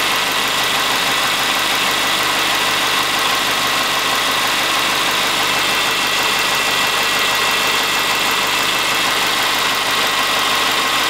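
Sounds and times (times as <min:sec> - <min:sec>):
car engine idling: 0:00.0 - 0:11.0
engine knocking: 0:00.0 - 0:11.0.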